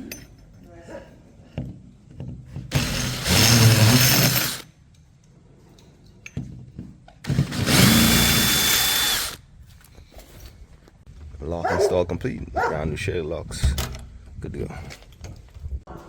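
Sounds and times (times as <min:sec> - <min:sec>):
power drill running: 0:02.7 - 0:04.6, 0:07.2 - 0:09.4.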